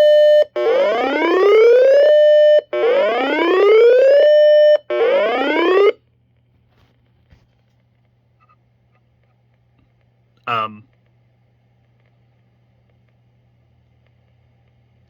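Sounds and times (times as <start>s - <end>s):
electronic siren alert tone: 0.0s - 6.0s.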